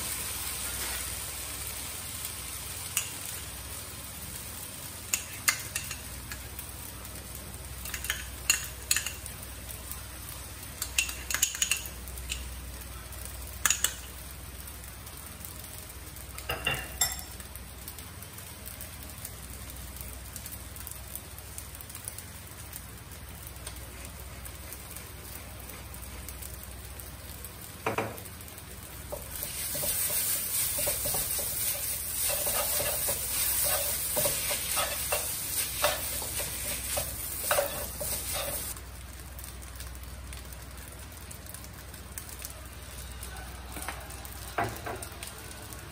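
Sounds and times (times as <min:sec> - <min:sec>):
food sizzling in frying pan: 0:00.0 - 0:45.9
spatula scraping against pan: 0:29.4 - 0:38.7.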